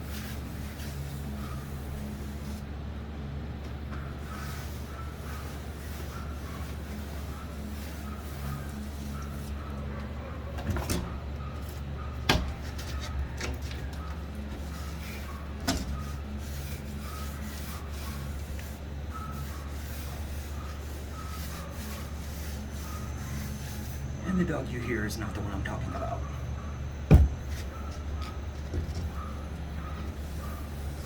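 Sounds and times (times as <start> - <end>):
steady low hum: 0.0 - 31.0
dog barking: 1.4 - 1.7, 4.0 - 12.3, 13.9 - 16.3, 19.1 - 23.8, 26.0 - 31.0
sharp knocks: 27.1 - 27.5.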